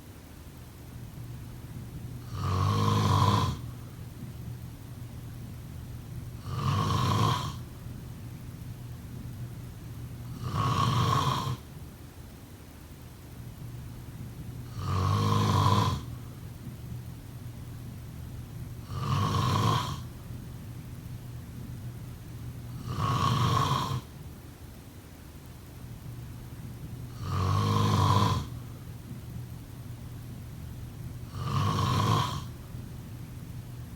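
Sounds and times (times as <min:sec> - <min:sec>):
person snoring: 0:02.2 - 0:03.7, 0:06.4 - 0:07.6, 0:10.3 - 0:11.6, 0:14.7 - 0:16.1, 0:18.8 - 0:20.1, 0:22.8 - 0:24.1, 0:27.1 - 0:28.6, 0:31.2 - 0:32.5.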